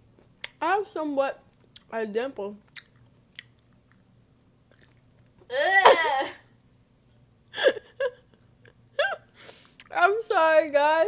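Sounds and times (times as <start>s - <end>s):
woman's wordless cry: 5.5s - 6.4s.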